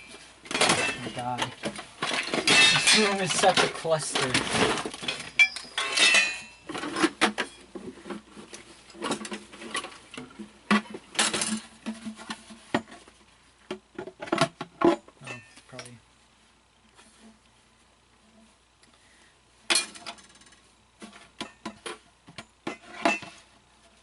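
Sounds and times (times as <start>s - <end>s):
rustling: 0.0s - 14.3s, 15.3s - 24.0s
hard parts clinking and rattling: 0.0s - 16.0s, 19.7s - 23.6s.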